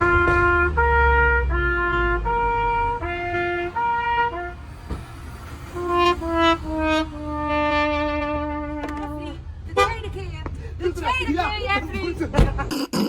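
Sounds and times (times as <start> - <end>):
two-tone police siren: 0.1 - 5.0.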